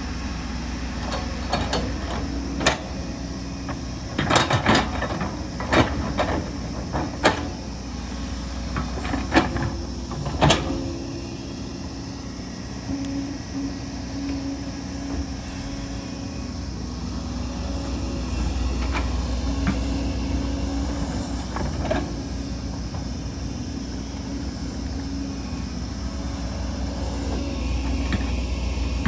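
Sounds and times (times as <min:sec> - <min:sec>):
excavator diesel engine rumble: 0:00.0 - 0:29.0.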